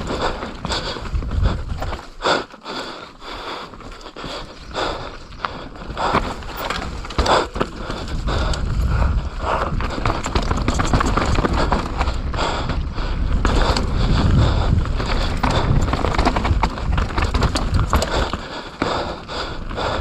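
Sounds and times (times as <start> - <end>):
wind rumble on microphone: 0.0 - 2.2, 4.4 - 20.0
chain and frame rattles: 9.9 - 12.2, 13.4 - 18.4.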